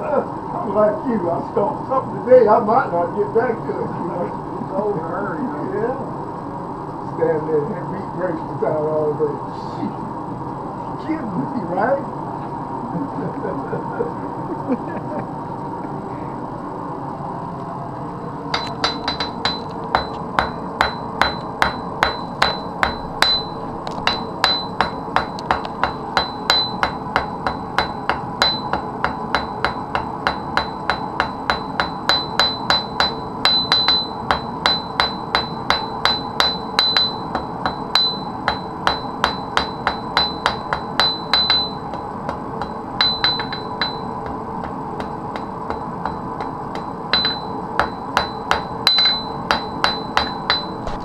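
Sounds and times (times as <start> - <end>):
steady hum: 0.0 - 51.0
hammer striking iron on anvil: 18.5 - 50.9.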